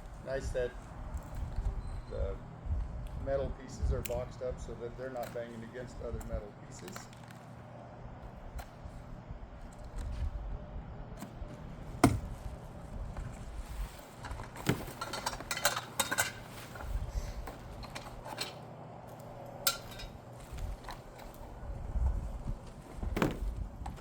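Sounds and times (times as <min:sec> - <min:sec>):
wind rumble on microphone: 0:00.0 - 0:05.0, 0:05.9 - 0:06.5, 0:08.0 - 0:14.5, 0:16.8 - 0:17.9, 0:20.5 - 0:24.0
metal parts knocking and clinking: 0:14.2 - 0:21.4.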